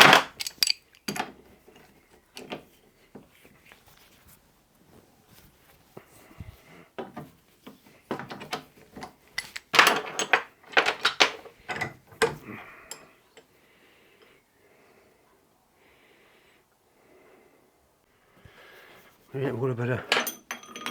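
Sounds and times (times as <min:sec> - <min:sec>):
hard objects knocking and clattering: 0:00.0 - 0:01.4, 0:08.1 - 0:12.4
faint rustling: 0:01.7 - 0:08.1.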